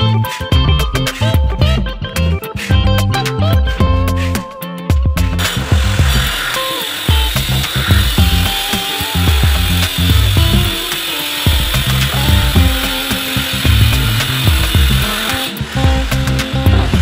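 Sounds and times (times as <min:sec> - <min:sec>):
music with heavy bass beat: 0:00.0 - 0:17.0.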